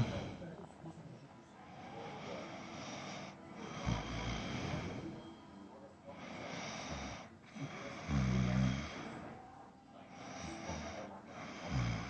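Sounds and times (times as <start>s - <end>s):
person snoring: 0.0s - 0.4s, 6.2s - 9.1s, 10.2s - 12.0s
breathy breathing: 0.0s - 0.6s, 1.6s - 5.3s, 6.1s - 12.0s.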